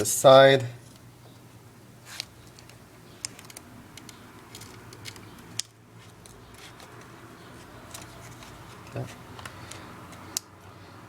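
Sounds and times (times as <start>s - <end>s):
laptop and keyboard clicks: 2.2s - 7.2s, 7.8s - 10.6s.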